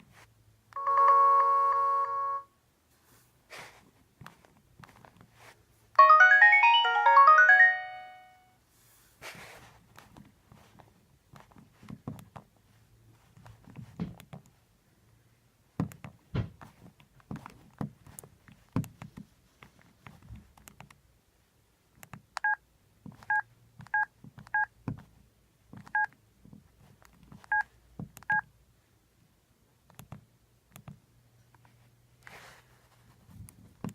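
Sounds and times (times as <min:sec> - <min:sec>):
phone keypad beeps: 0:00.8 - 0:02.4, 0:23.3 - 0:24.7, 0:28.3 - 0:28.5
handling clicks and taps: 0:11.3 - 0:12.5, 0:13.4 - 0:14.6, 0:15.8 - 0:21.0.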